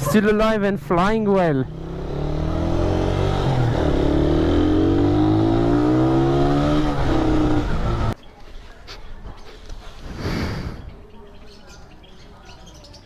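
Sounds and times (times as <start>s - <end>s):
small motorcycle engine accelerating: 1.6s - 8.2s.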